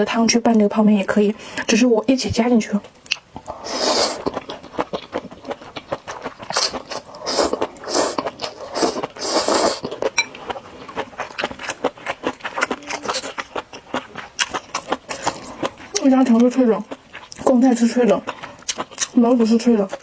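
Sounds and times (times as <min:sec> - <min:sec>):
chewing and mouth clicks: 0:02.8 - 0:20.0
noodles slurped: 0:03.4 - 0:10.1.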